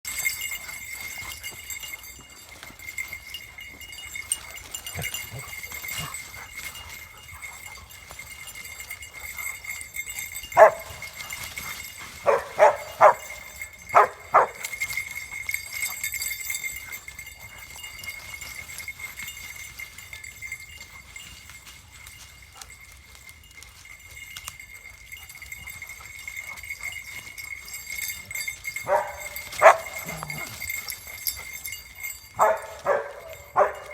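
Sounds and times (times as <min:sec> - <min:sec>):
dog barking: 0:10.6 - 0:11.0, 0:12.2 - 0:14.8, 0:28.8 - 0:30.5, 0:32.4 - 0:33.9.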